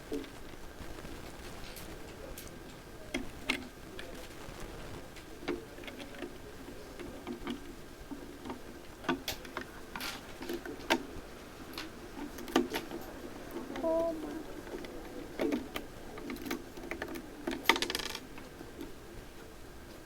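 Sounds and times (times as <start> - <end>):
plastic bricks clicking together: 15.4 - 18.4.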